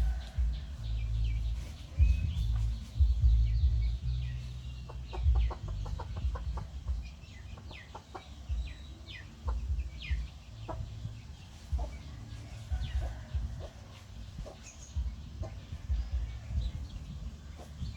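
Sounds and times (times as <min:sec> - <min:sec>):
low rumble: 0:00.0 - 0:07.3.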